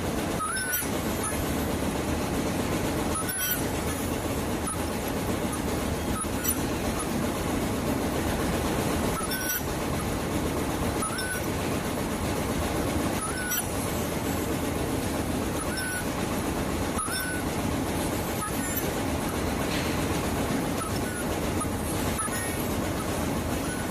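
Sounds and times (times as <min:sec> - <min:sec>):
machine din: 0:00.1 - 0:23.9
welder click and high chirp: 0:00.4 - 0:01.6, 0:03.1 - 0:07.2, 0:09.1 - 0:09.8, 0:10.9 - 0:11.6, 0:13.2 - 0:14.5, 0:15.5 - 0:16.2, 0:16.9 - 0:19.4, 0:20.7 - 0:23.9.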